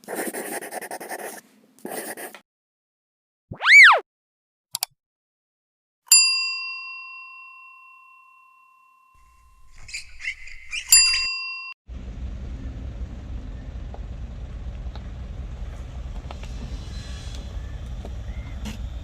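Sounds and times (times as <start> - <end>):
rising and falling tone: 3.5 - 4.0
click: 4.7 - 4.9
bell-like ding: 6.1 - 9.4.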